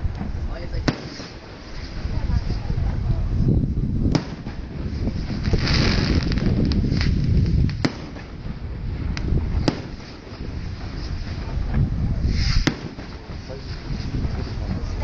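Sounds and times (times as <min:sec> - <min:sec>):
firework cracks: 0:00.0 - 0:03.0, 0:04.0 - 0:15.0
wind noise on microphone: 0:00.0 - 0:15.0
low rumble: 0:01.5 - 0:15.0.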